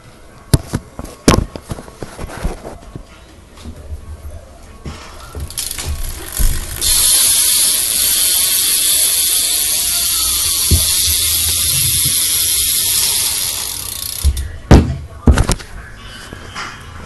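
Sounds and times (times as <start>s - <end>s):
bike hub ratchet buzzing: 5.3s - 14.6s
thumps: 10.2s - 13.2s, 14.0s - 15.7s.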